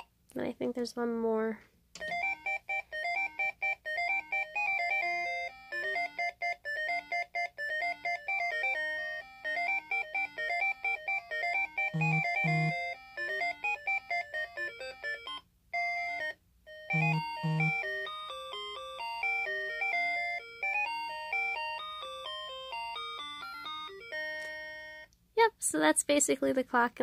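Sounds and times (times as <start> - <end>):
beeping chime melody: 2.0 - 25.1.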